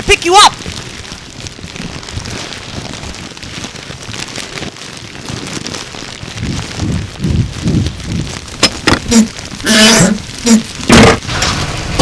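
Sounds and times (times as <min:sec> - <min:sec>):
fire crackling: 0:00.0 - 0:12.0
low rumble: 0:05.2 - 0:12.0.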